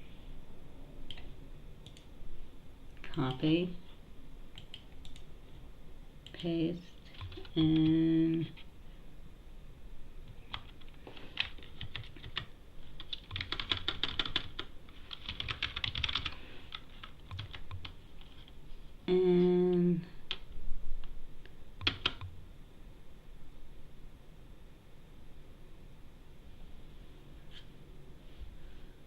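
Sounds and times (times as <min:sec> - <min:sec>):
typing on a computer keyboard: 0:04.6 - 0:05.3, 0:07.1 - 0:08.0, 0:10.5 - 0:18.0, 0:21.8 - 0:22.3.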